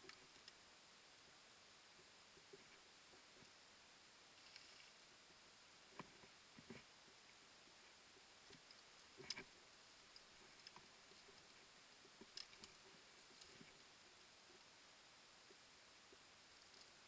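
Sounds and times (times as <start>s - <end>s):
faint clicks: 0.0s - 0.6s, 8.4s - 14.7s, 15.4s - 17.0s.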